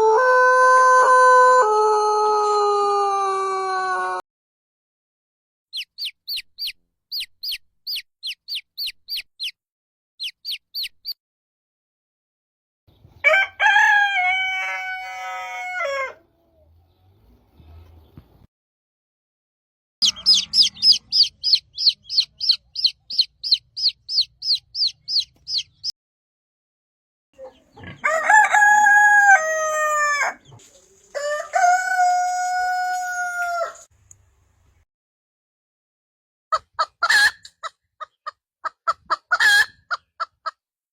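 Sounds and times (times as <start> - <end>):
rooster crowing: 0.0 - 4.2, 13.2 - 16.2, 28.0 - 30.4, 31.1 - 33.9
chick cheeping: 5.7 - 9.6, 10.2 - 11.2, 20.0 - 25.9.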